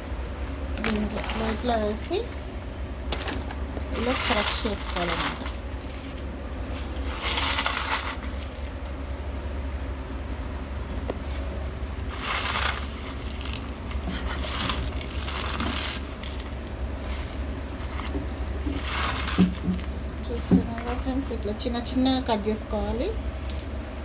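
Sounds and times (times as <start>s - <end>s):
steady low hum: 0.0s - 24.0s
potato chips crushed by hand: 0.8s - 2.4s, 3.1s - 8.9s, 11.4s - 20.5s.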